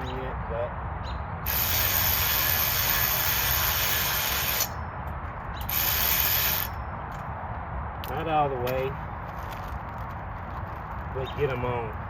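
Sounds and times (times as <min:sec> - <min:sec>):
power drill driving bolts: 0:01.5 - 0:04.7.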